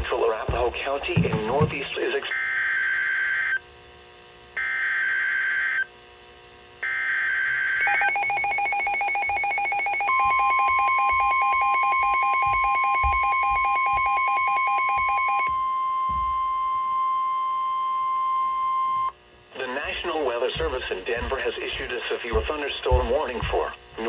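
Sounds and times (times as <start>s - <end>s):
steady warning alarm tone: 6.8s - 19.2s, 19.8s - 23.7s
rapidly pulsing alarm beep: 6.9s - 19.1s.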